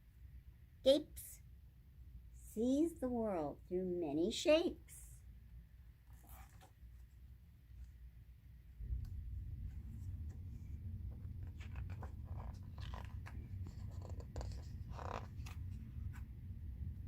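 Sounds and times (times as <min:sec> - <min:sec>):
paper pages rustling: 0:06.1 - 0:07.2, 0:11.1 - 0:16.3
steady low rumble: 0:07.0 - 0:17.0.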